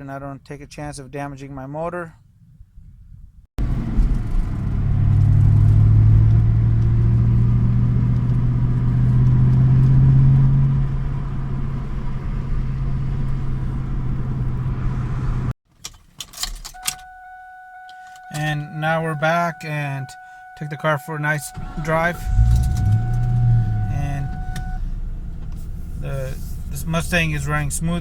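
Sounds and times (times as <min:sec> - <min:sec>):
car engine running steadily: 0:03.6 - 0:16.0, 0:16.6 - 0:28.0.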